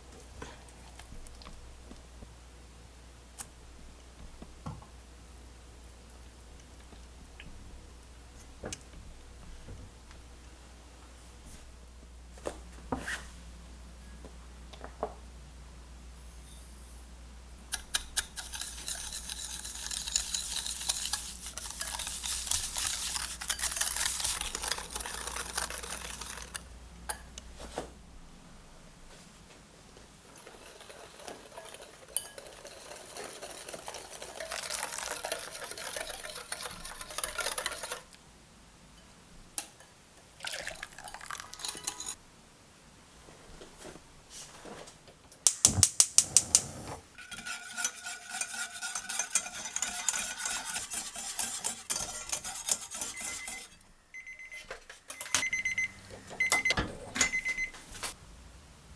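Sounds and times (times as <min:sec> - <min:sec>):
utensil scraping a dish: 0:17.8 - 0:26.6, 0:30.3 - 0:38.1, 0:46.2 - 0:53.8.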